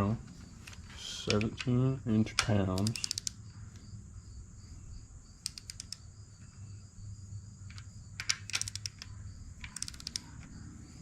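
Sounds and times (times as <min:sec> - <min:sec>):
torque wrench ratcheting clicks: 0:02.4 - 0:03.4, 0:05.4 - 0:06.0, 0:07.7 - 0:10.5.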